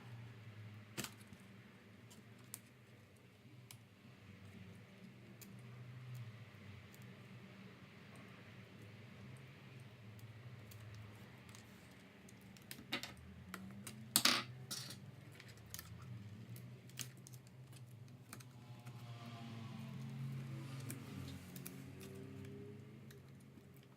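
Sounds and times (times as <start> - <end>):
small parts and tools clicking: 8.1 - 19.1.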